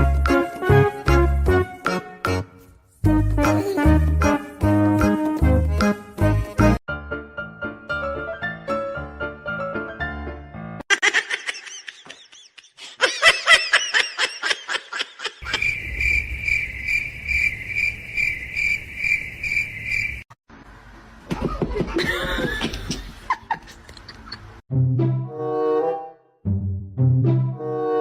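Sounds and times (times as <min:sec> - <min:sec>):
people laughing: 0:10.9 - 0:15.6, 0:21.3 - 0:24.5.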